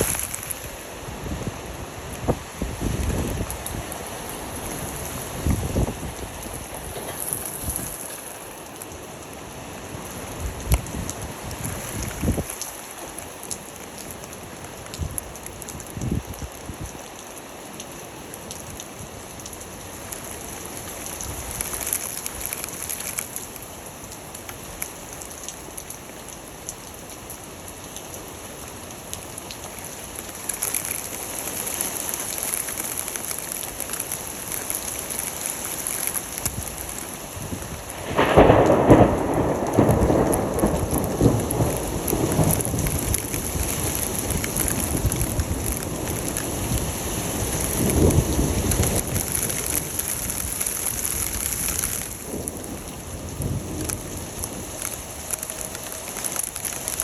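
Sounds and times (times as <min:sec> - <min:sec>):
steady rain falling: 0:00.0 - 0:57.0
thunder clap rumbling: 0:37.5 - 0:57.0.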